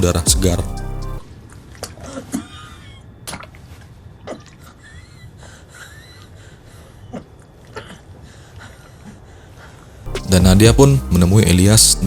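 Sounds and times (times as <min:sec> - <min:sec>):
low steady hum: 0:00.0 - 0:01.3, 0:10.1 - 0:12.0.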